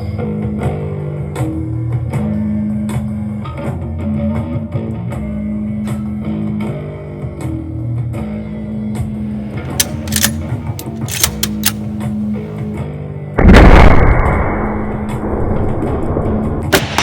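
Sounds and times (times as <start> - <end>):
sharp crack: 9.6 - 12.2, 16.7 - 17.0.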